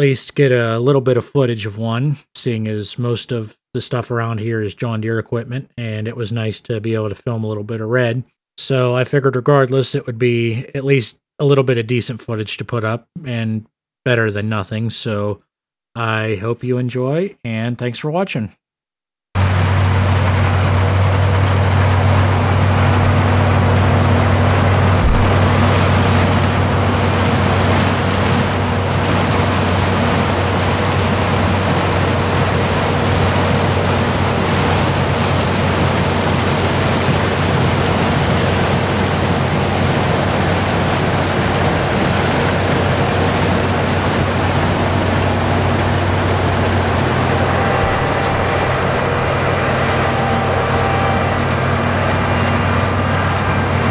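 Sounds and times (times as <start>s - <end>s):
combine engine humming: 19.4s - 53.9s
rush of threshing machinery: 19.4s - 53.9s.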